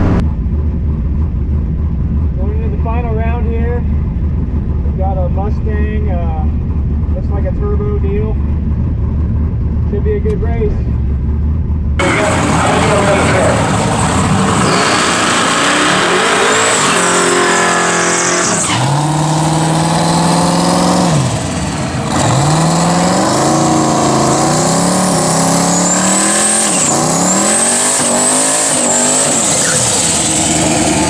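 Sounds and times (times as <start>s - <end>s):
race car engine accelerating: 8.3s - 31.0s
high turbo whistle: 12.0s - 19.3s.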